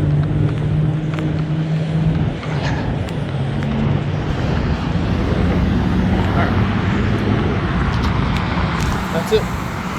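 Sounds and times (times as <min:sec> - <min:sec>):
low engine hum: 0:00.0 - 0:09.9
vehicle engines passing: 0:00.0 - 0:09.9.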